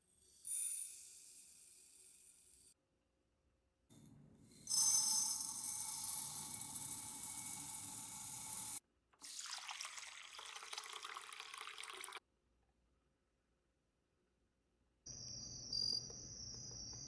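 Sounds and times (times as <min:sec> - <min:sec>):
water running from tap: 0:07.6 - 0:12.2.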